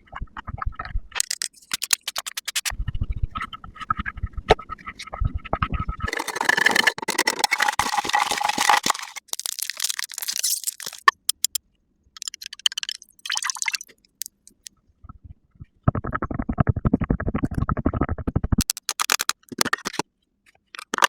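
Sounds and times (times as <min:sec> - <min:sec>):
makeup products crackling and scratching: 0:00.4 - 0:02.7, 0:05.7 - 0:11.6, 0:16.0 - 0:20.0, 0:20.6 - 0:21.0.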